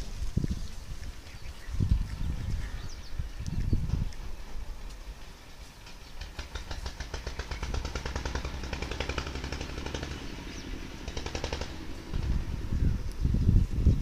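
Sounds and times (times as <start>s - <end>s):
bird rattling chatter: 5.7s - 10.2s, 11.1s - 12.2s.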